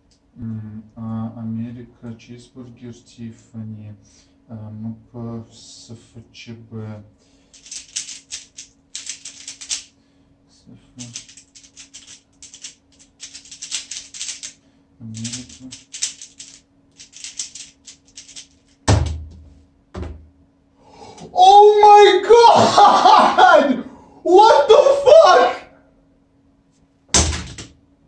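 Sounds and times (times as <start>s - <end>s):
puzzle cube clicking and rattling: 7.6s - 9.9s, 11.0s - 14.6s, 15.2s - 18.8s
loud thump: 18.9s - 19.4s.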